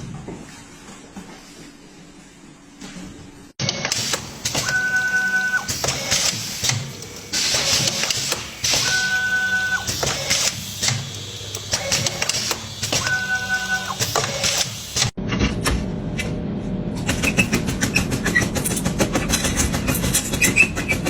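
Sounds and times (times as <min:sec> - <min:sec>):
high machine whine: 0:03.6 - 0:15.2
machine clattering: 0:03.9 - 0:15.2.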